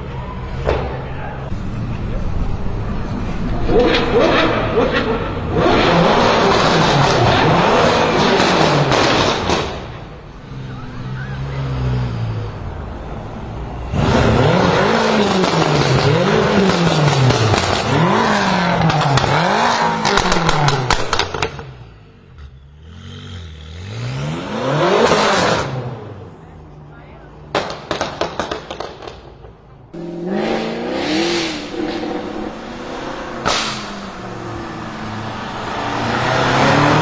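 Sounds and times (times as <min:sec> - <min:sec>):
car engine revving: 0:00.0 - 0:26.6, 0:27.5 - 0:37.0
exhaust crackles and pops: 0:15.2 - 0:21.9, 0:27.5 - 0:29.9, 0:31.8 - 0:34.5.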